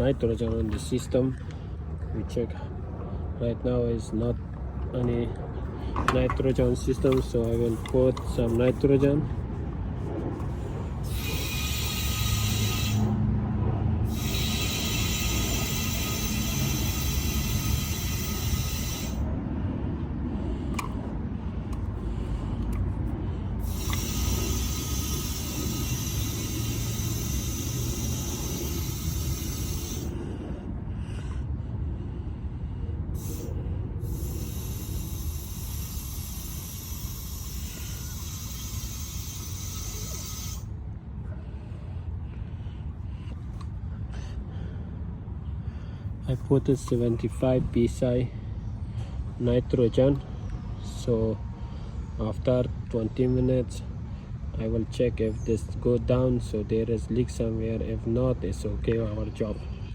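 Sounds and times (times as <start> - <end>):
steady low rumble: 0.0 - 53.2
gas hissing through hoses: 11.0 - 13.2, 14.1 - 19.2, 23.6 - 30.2, 33.2 - 40.7.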